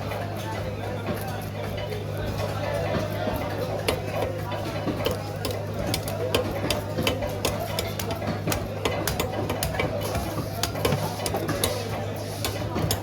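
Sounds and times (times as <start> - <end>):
background chatter: 0.0 - 13.0
blade chopping fish: 3.8 - 13.0.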